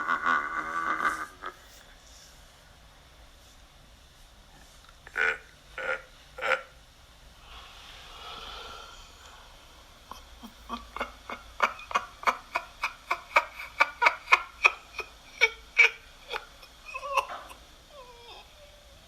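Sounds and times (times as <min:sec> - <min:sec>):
demonic laughter: 0:00.0 - 0:01.6, 0:08.6 - 0:18.6
breathy exhale: 0:07.4 - 0:10.5.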